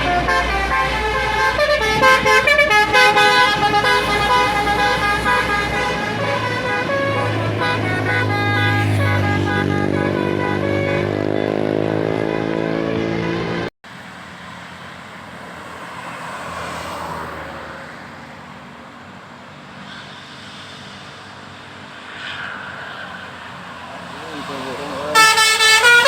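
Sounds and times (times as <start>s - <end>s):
musical bus horn melody: 0.0s - 13.7s, 25.1s - 26.0s
vehicle passing: 0.0s - 13.7s, 14.3s - 18.9s, 21.5s - 26.0s
road traffic noise: 0.0s - 26.0s.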